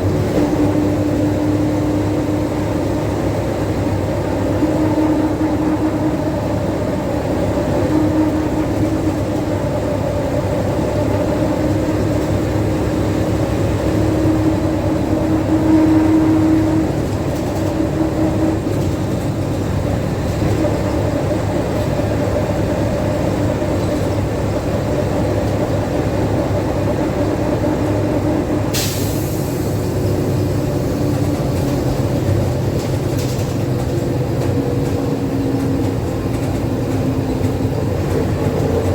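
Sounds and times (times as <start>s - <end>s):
bus diesel engine droning: 0.0s - 38.9s
compressed air hiss: 28.7s - 30.1s.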